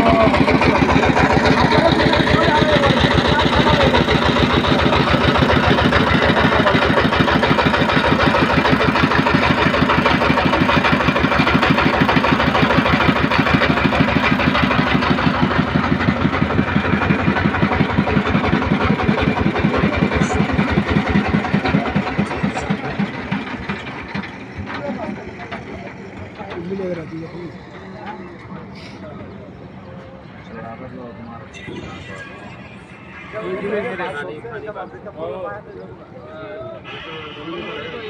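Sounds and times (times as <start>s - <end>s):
boat engine chugging: 0.0s - 38.0s.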